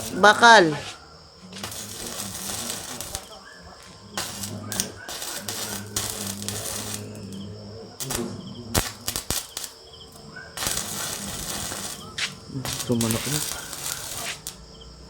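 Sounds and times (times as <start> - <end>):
electrical hum: 0.0 - 15.0
welding hissing crackle: 0.0 - 15.0.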